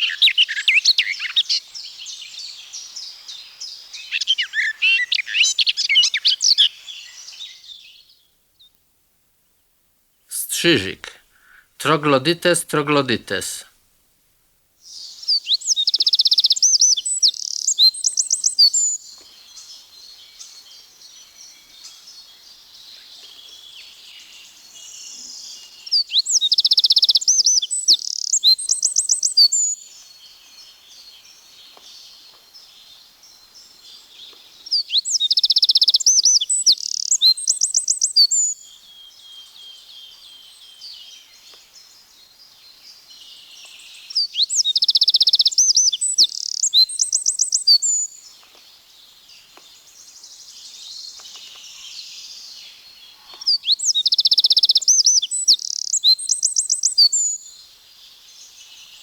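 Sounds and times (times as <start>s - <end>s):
faint bird sounds: 14.8s - 59.0s
wren singing trills: 15.7s - 18.9s, 35.1s - 38.6s, 44.3s - 48.0s, 53.6s - 57.4s.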